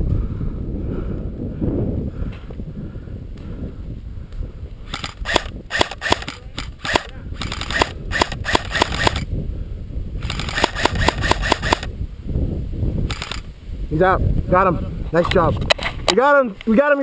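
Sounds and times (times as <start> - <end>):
wind on microphone: 0.0 - 17.0
airsoft guns firing: 4.9 - 9.2, 10.4 - 11.9.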